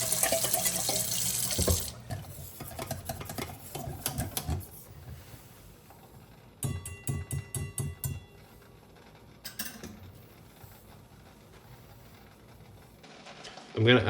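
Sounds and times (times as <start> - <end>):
tap running water: 0.0 - 2.1.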